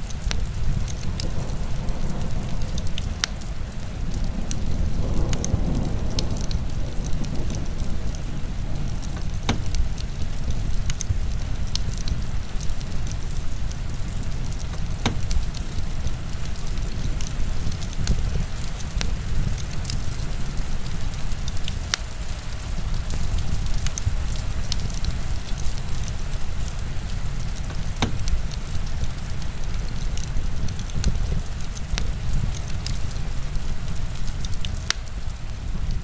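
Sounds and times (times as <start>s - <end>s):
crackling wood fire: 0.0s - 36.0s
heavy rain falling: 0.0s - 36.0s.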